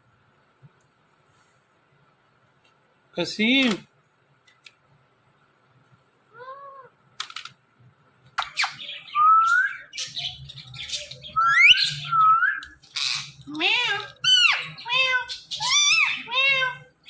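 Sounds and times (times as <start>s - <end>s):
parrot calling: 8.4s - 17.0s
raspy chatter and squawks: 8.4s - 17.0s.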